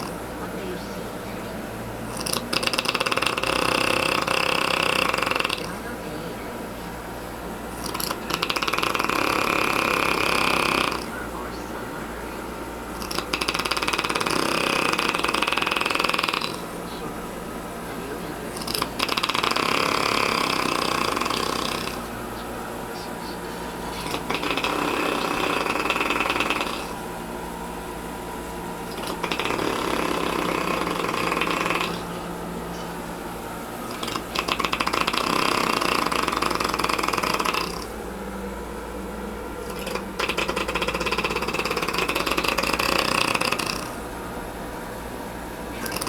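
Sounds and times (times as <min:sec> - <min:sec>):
person snoring: 0:00.0 - 0:00.2, 0:02.1 - 0:06.3, 0:07.7 - 0:11.4, 0:12.9 - 0:17.2, 0:18.1 - 0:27.0, 0:28.8 - 0:32.3, 0:33.9 - 0:38.0, 0:39.6 - 0:44.0, 0:45.7 - 0:46.0.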